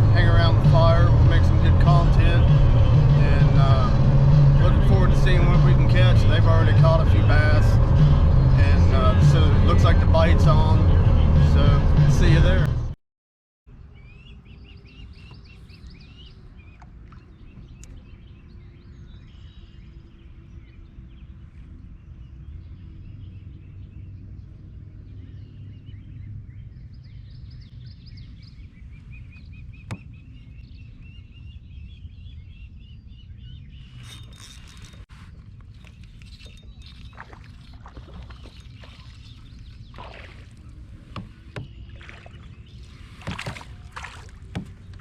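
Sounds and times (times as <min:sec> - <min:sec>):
birds chirping and singing: 0:00.0 - 0:12.7, 0:13.8 - 0:45.0
low steady rumble: 0:00.0 - 0:13.0.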